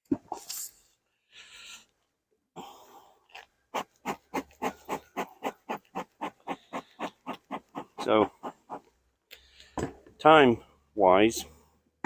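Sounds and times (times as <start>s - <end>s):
dog panting rapidly: 3.8s - 8.8s.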